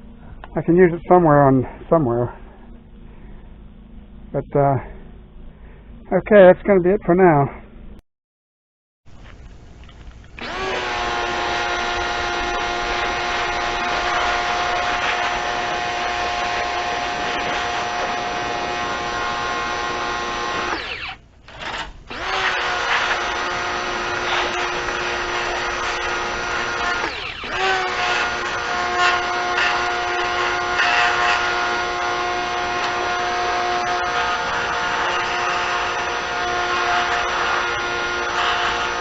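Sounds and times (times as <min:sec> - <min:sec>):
power tool motor whining: 0:10.3 - 0:39.0.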